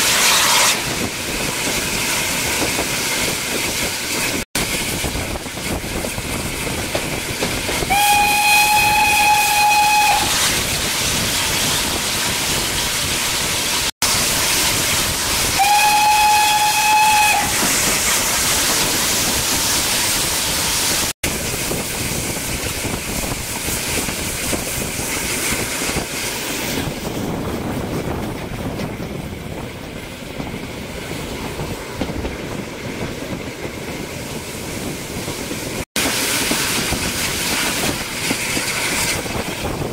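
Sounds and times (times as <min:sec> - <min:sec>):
steam locomotive whistle: 0:00.0 - 0:00.9, 0:07.8 - 0:10.6, 0:15.5 - 0:17.8
train hiss and running noise: 0:00.0 - 0:39.9.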